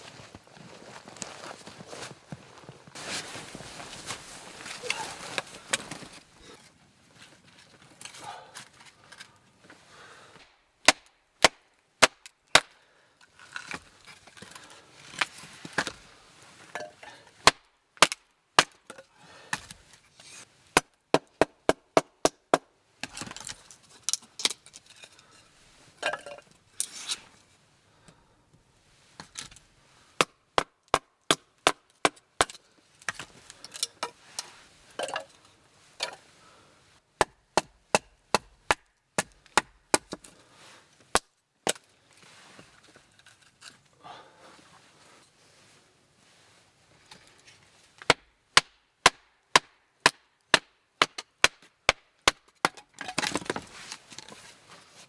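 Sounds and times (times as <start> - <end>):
faint rustling: 0.0 - 9.9.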